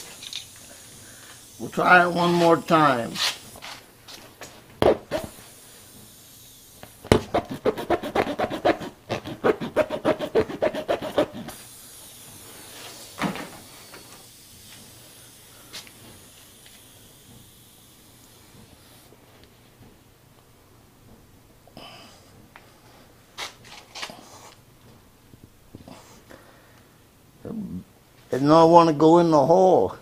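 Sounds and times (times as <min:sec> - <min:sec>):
tire repair tool rasping in rubber: 0:01.3 - 0:03.9, 0:04.8 - 0:05.6, 0:06.6 - 0:13.2.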